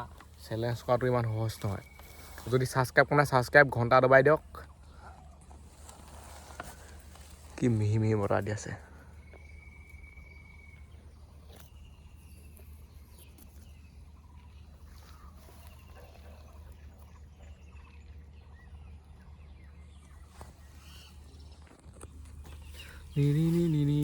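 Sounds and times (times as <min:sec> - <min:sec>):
low steady rumble: 0:00.0 - 0:24.0
short bird chirps: 0:20.0 - 0:21.6.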